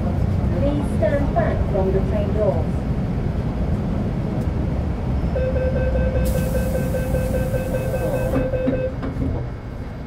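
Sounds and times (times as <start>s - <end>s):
train running with low rumble: 0.0s - 10.0s
hiss: 6.3s - 8.0s.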